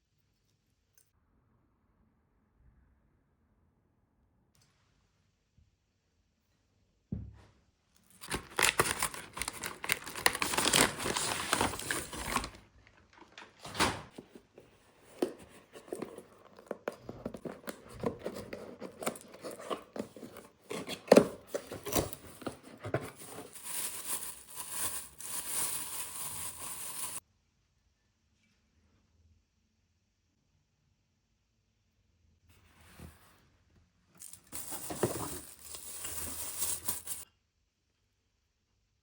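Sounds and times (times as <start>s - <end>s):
packaging ripping and rustling: 8.1s - 13.4s, 17.0s - 27.2s.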